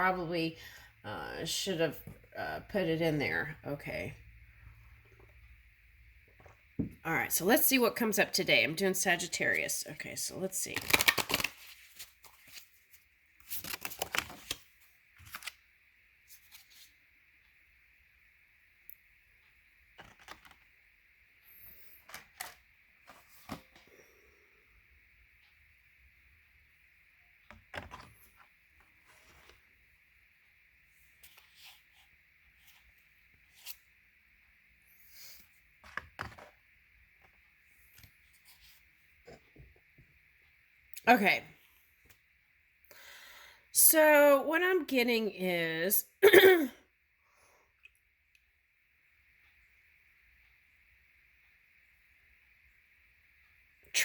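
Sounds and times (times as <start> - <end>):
low steady hiss: 0.0 - 54.0
cards being shuffled: 10.7 - 15.6, 20.0 - 20.6.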